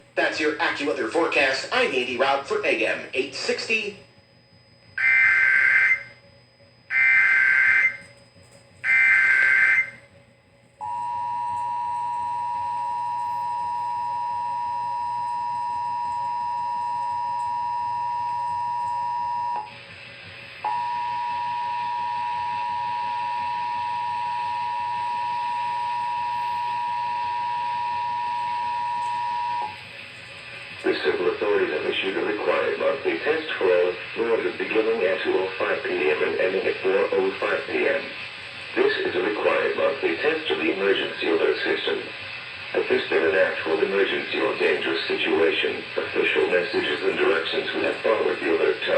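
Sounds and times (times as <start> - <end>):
steady two-tone attention signal: 0.2 - 10.2, 10.8 - 19.8, 20.6 - 29.9
warbling digital data tones: 6.9 - 10.1.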